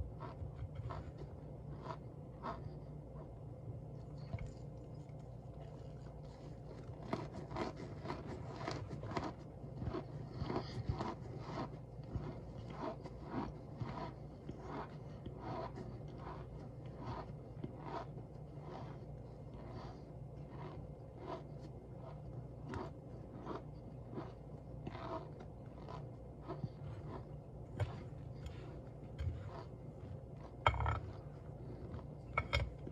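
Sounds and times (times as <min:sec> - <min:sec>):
cornstarch crunching and squeaking: 0:06.6 - 0:28.8.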